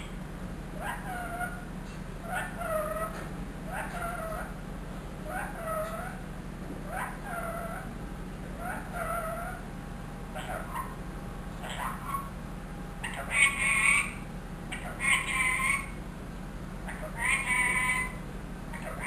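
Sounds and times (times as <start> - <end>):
parakeet calling: 0.0 - 0.2, 0.8 - 4.6, 5.2 - 6.2, 6.9 - 8.0, 8.6 - 9.7, 10.3 - 11.0, 11.6 - 12.4, 13.0 - 16.0, 16.8 - 19.0.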